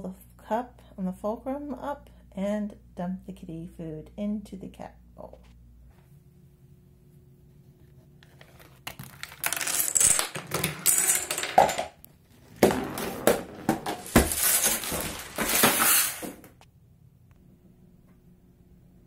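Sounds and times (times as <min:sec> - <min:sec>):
small hard objects clattering: 0:08.5 - 0:16.6.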